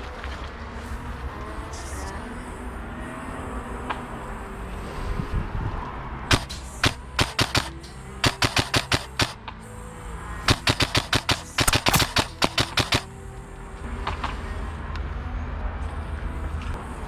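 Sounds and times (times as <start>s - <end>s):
airsoft guns firing: 10.5s - 13.0s.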